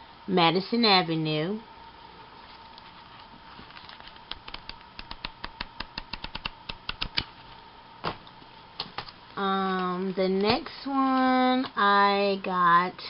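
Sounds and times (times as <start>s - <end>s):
faint steady hum: 0.0s - 13.0s
paper rustle: 2.5s - 4.8s.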